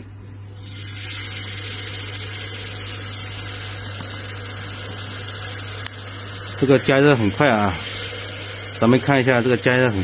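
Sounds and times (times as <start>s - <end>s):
cooling fan hiss: 0.0s - 10.0s
induction cooker humming: 0.0s - 10.0s.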